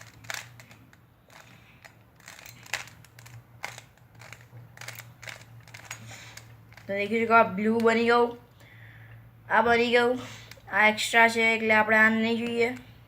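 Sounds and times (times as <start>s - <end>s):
plastic cube layers clicking: 0.0s - 6.9s.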